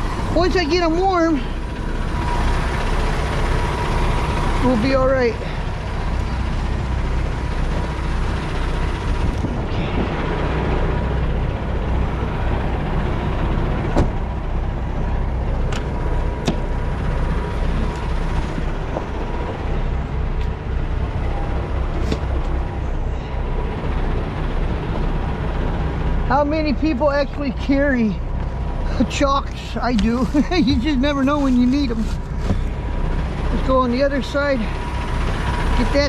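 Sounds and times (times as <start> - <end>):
diesel truck engine idling: 0.0 - 36.0
sharp clicks and knocks: 15.7 - 16.7.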